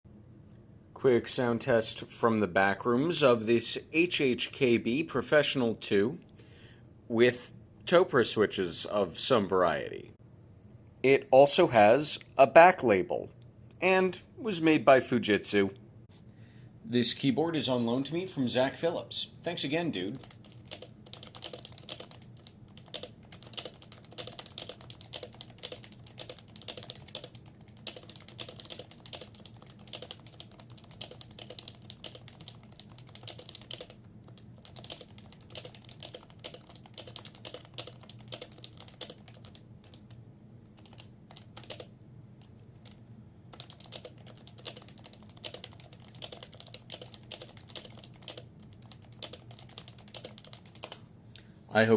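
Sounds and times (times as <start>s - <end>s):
faint low hum: 0.1s - 51.9s
keyboard typing: 20.1s - 40.2s, 40.8s - 51.0s.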